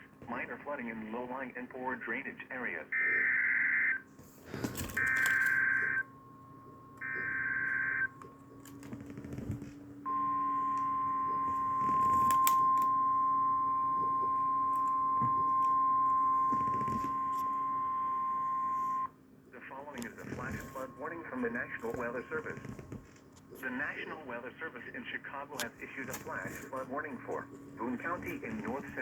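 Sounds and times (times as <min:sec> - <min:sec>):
steady weather radio alarm tone: 0:00.0 - 0:29.0.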